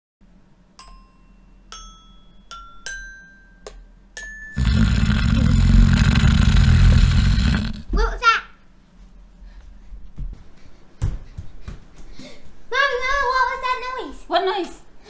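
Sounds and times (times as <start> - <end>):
loud dense rumbling noise: 4.6 - 7.8.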